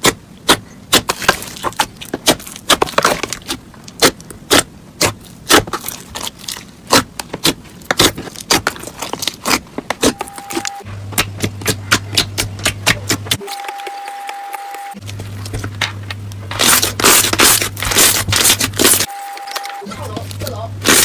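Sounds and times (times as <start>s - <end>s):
low steady hum: 0.0s - 21.0s.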